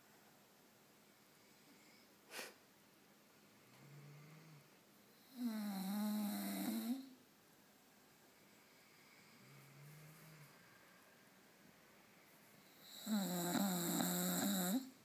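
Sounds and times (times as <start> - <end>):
dog snoring: 3.7 - 7.1, 12.6 - 15.0.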